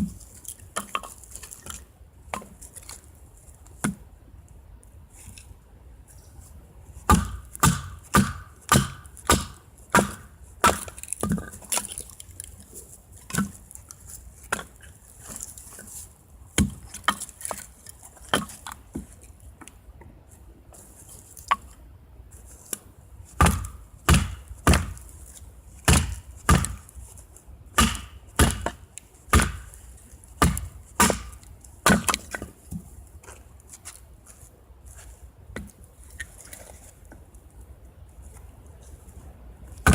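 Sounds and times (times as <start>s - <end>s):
axe chopping wood: 7.0s - 11.9s, 16.6s - 17.7s, 23.3s - 25.1s, 25.8s - 26.9s, 27.7s - 29.8s, 30.4s - 32.8s.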